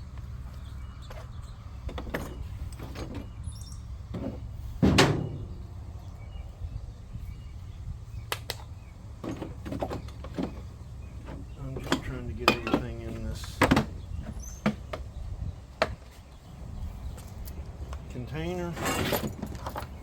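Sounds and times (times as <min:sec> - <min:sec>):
steady low rumble: 0:00.0 - 0:09.2
loud metal clunk: 0:04.2 - 0:05.8.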